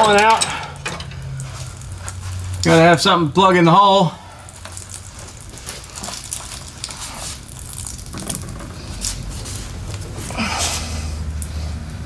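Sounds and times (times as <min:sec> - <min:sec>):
metal fittings clicking and scraping: 0:00.0 - 0:02.2.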